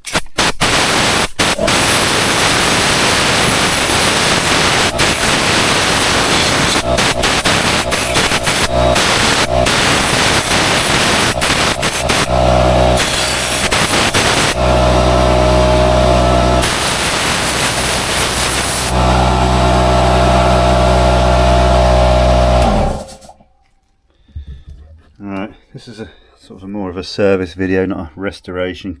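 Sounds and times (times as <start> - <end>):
loud air hissing rushes: 0.0 - 23.3
cleaning tool motor humming: 0.7 - 23.4.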